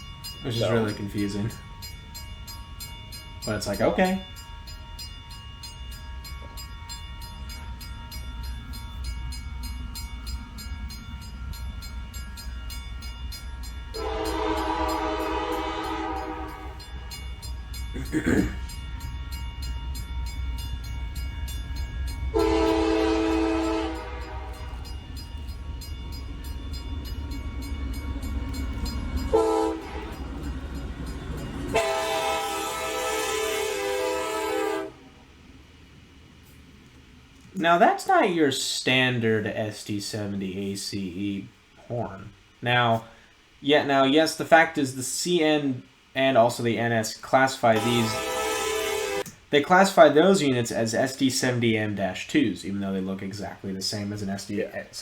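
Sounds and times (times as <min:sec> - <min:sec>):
ringing bell: 0:00.0 - 0:33.5
locomotive engine rumble: 0:00.0 - 0:42.6, 0:45.9 - 0:49.6
locomotive air horn: 0:13.9 - 0:17.1, 0:22.3 - 0:24.9, 0:29.3 - 0:30.3, 0:31.7 - 0:35.2, 0:47.7 - 0:49.3.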